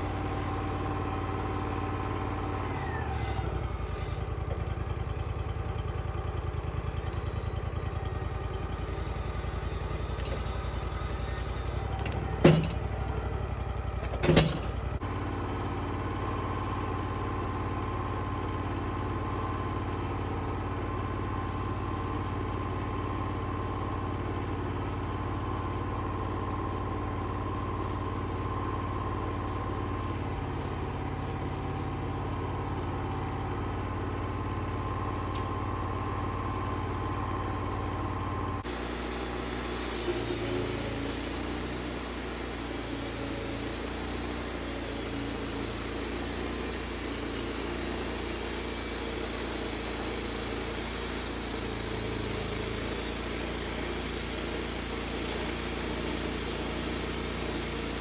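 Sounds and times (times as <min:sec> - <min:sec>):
engine running: 0:00.0 - 0:58.0
hissy engine noise: 0:09.3 - 0:15.0, 0:21.4 - 0:58.0.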